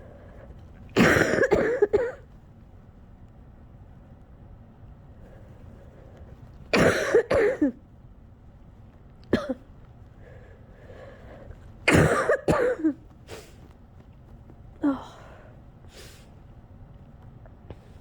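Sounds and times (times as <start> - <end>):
person coughing: 1.0 - 2.2, 6.8 - 7.8, 9.3 - 9.7, 11.9 - 13.6
shaky breathing: 10.2 - 11.8.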